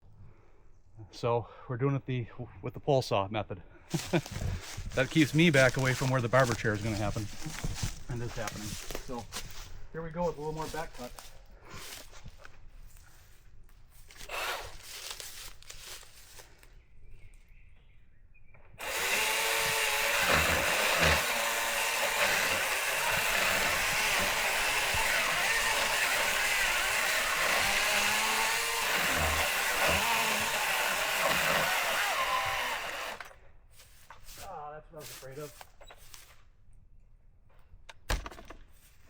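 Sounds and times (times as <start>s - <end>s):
cordless pole saw cutting wood: 14.0s - 15.6s, 18.8s - 33.4s.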